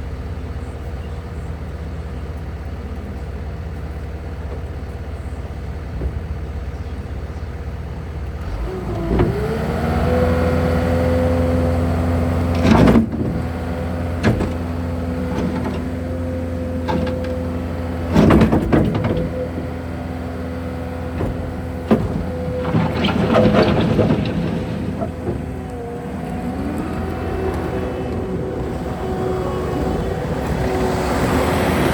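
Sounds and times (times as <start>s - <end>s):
diesel engine revving: 8.0s - 31.9s
loud clanks and knocks: 12.5s - 13.5s, 14.2s - 16.1s, 16.8s - 19.7s, 21.0s - 30.7s.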